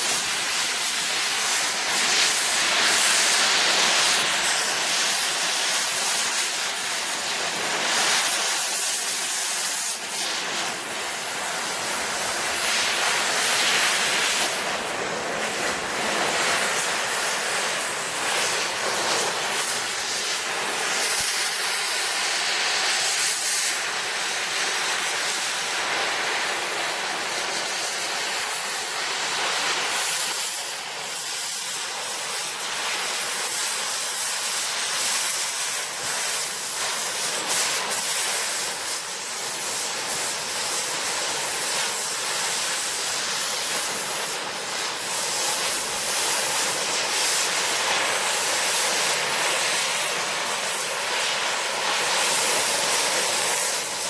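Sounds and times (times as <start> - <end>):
cutting torch hissing: 0.0 - 54.0.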